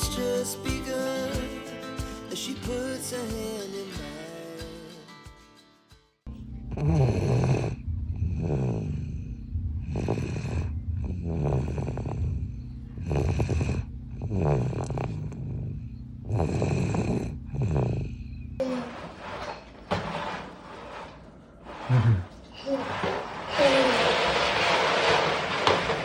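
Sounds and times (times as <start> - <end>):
faint steady hum: 6.3 - 23.8
person snoring: 6.7 - 19.2, 21.8 - 24.0.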